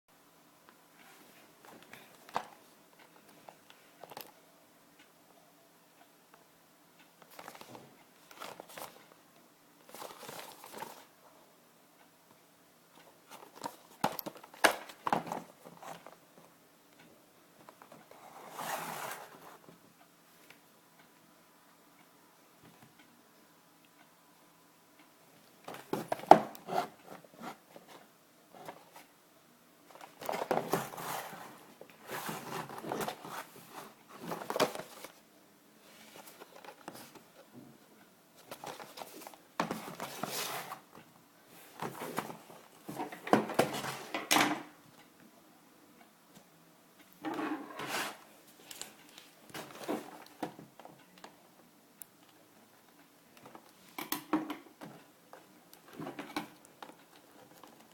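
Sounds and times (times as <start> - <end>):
plastic and cardboard rustling: 7.3 - 9.2, 9.8 - 11.1, 13.3 - 16.2, 17.6 - 19.8, 25.6 - 29.1, 29.9 - 35.2, 35.8 - 37.5, 38.4 - 44.3, 47.2 - 51.4.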